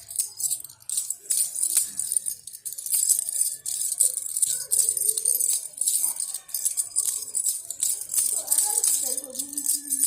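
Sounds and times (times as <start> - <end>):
toy rattle shaking: 0.0 - 10.0.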